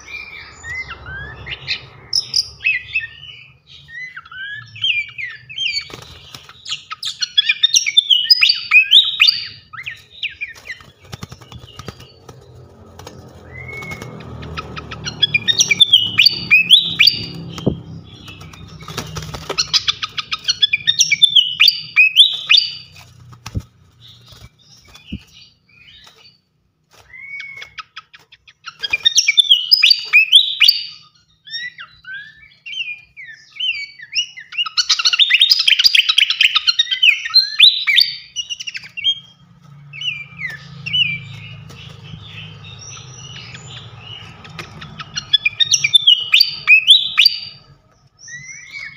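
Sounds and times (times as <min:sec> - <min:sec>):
low rumbling noise: 0:00.0 - 0:03.7, 0:10.8 - 0:20.9
songbird chirping and trilling: 0:00.0 - 0:48.9.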